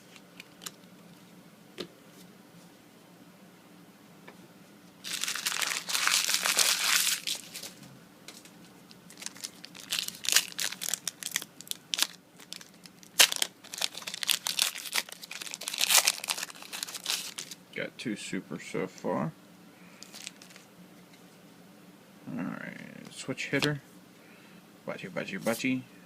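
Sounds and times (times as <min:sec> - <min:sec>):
foil wrapper tearing and crinkling: 0:05.0 - 0:07.8, 0:09.1 - 0:17.6, 0:20.0 - 0:20.7.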